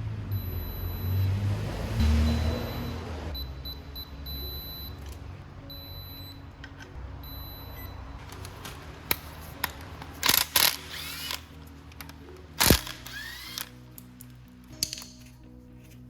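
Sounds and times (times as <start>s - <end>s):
background music: 0.0s - 16.0s
sharp clicks and clinks: 12.0s - 15.4s.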